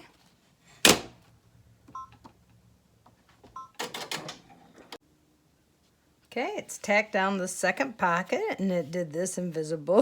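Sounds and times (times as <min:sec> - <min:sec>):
two-tone control panel beeps: 0:01.9 - 0:02.2.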